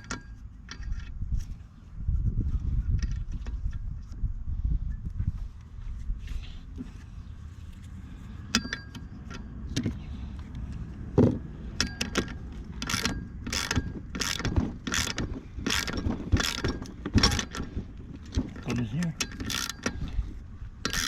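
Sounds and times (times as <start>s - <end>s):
tool clinks: 8.5s - 9.4s
ratchet wrench clicking: 11.8s - 21.0s.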